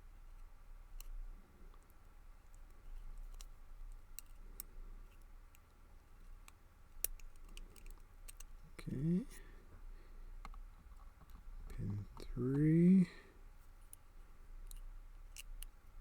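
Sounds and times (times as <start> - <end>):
small metal parts clicking: 6.4 - 8.6.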